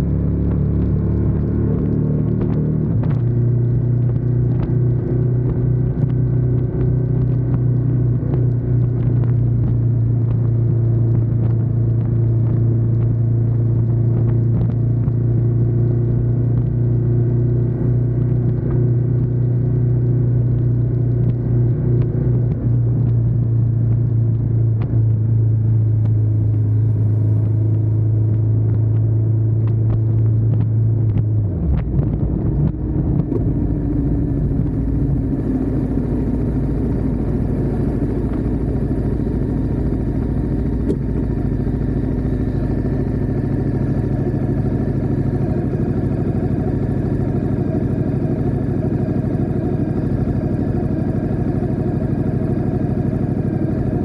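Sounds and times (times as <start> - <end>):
motorcycle engine running: 0.0 - 54.0
wind and road noise: 0.0 - 54.0.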